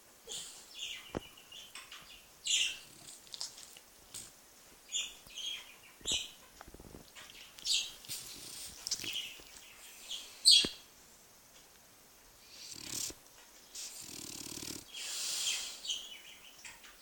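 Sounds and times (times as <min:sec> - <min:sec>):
dog snoring: 0:02.5 - 0:03.4, 0:08.1 - 0:09.2, 0:12.4 - 0:15.4.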